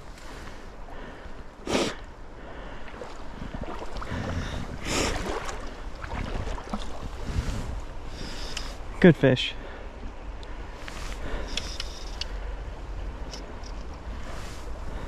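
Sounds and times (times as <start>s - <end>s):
stream water running: 0.0s - 15.0s
water splashes: 2.6s - 8.3s.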